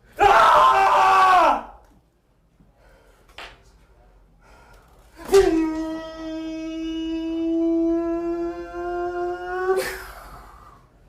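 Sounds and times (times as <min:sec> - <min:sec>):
man wailing a long note: 0:05.3 - 0:09.8.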